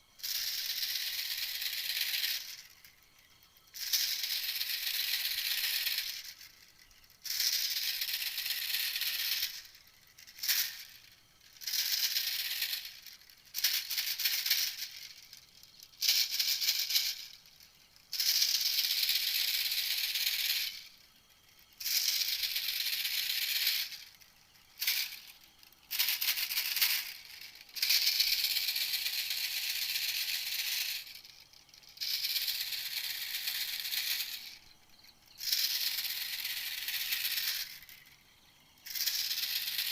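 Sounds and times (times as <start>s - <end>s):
dry rattling bird call: 0.2s - 3.0s, 21.7s - 38.2s, 38.8s - 39.9s.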